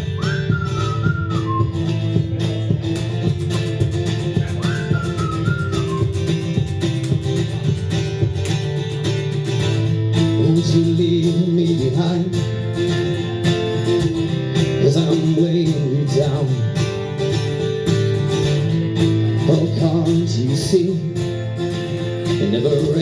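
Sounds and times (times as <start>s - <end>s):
regular beat: 0.0s - 10.8s
strummed guitar chords: 0.0s - 23.0s.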